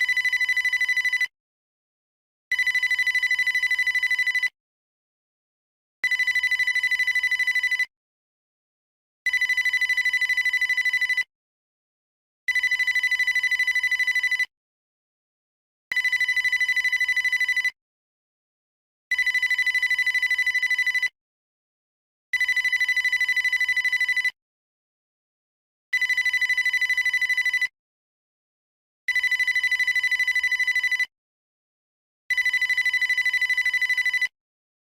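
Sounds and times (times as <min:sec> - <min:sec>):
digital telephone ringing: 0:00.0 - 0:01.3, 0:06.0 - 0:07.9, 0:09.3 - 0:11.3, 0:12.5 - 0:14.5, 0:15.9 - 0:17.8, 0:22.4 - 0:24.4, 0:26.0 - 0:27.7, 0:29.1 - 0:31.1, 0:32.3 - 0:34.3.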